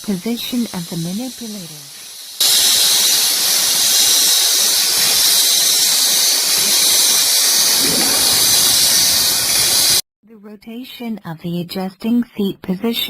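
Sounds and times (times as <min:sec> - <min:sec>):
bottle filling machine hissing: 0:01.9 - 0:10.0.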